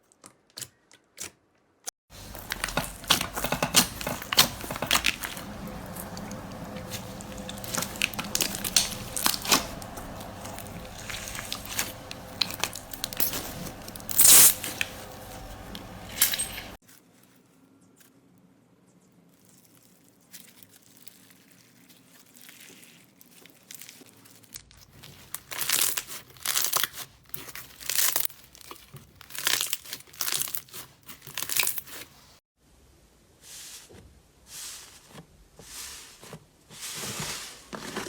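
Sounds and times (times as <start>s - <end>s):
slime crackling and tearing: 2.2s - 15.2s, 20.3s - 32.1s.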